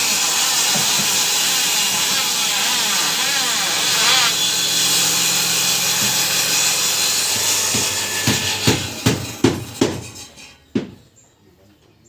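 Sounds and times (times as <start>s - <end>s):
wood planing machine running: 0.0s - 10.2s
knocks: 7.4s - 11.0s.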